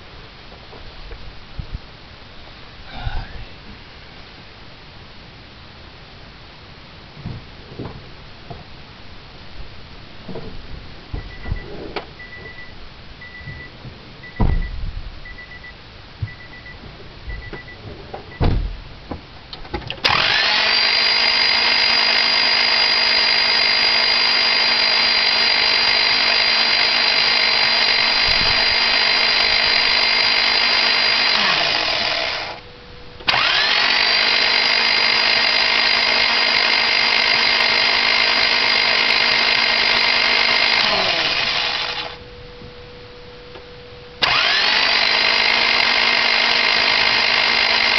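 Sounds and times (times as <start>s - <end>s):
starter motor cranking engine: 20.0s - 32.6s, 33.2s - 42.2s, 44.2s - 47.9s.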